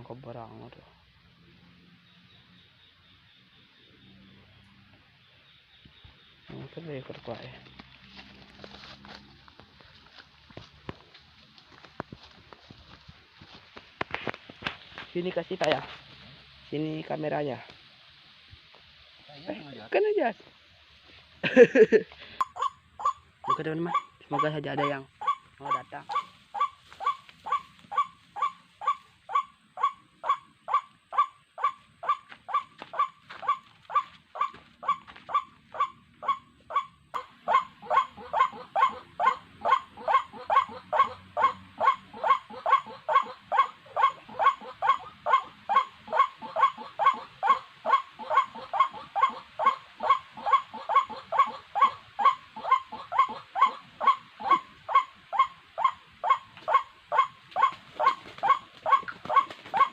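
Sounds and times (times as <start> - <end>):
bird croaking calls: 22.4 - 59.9.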